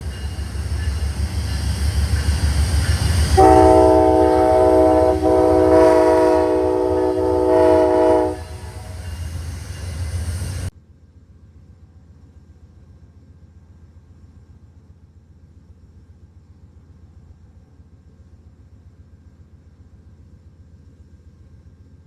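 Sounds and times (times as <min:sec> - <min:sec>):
low rumble of train: 0:00.0 - 0:22.0
locomotive air horn: 0:03.4 - 0:09.4.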